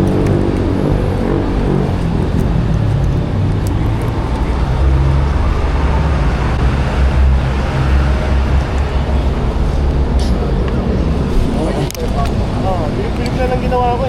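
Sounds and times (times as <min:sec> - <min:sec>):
motorcycle engine idling: 0:00.0 - 0:06.0.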